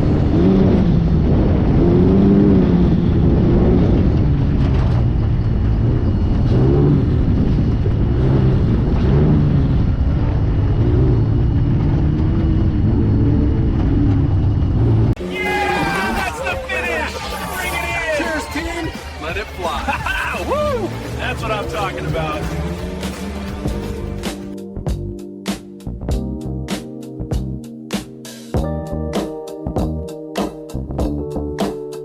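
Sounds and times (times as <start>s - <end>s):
race car engine revving: 0.0s - 24.6s.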